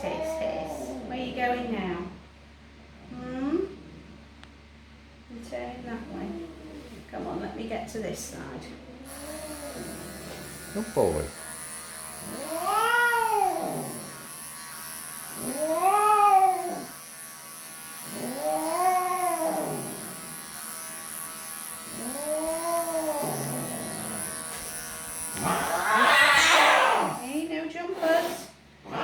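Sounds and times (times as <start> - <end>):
electric clippers whining: 9.0 - 27.5
cat yowling: 12.3 - 13.9, 15.5 - 16.9, 25.4 - 27.2.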